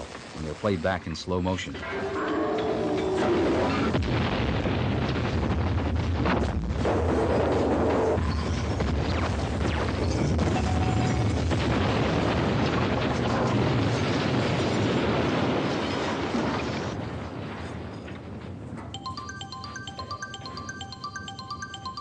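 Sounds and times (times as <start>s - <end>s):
rumbling explosion: 3.5s - 10.5s, 11.2s - 17.6s.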